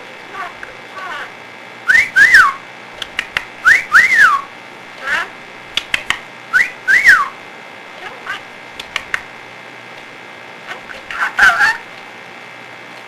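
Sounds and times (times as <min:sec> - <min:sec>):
parrot whistling: 0:01.9 - 0:02.6, 0:03.6 - 0:04.5, 0:06.5 - 0:07.3.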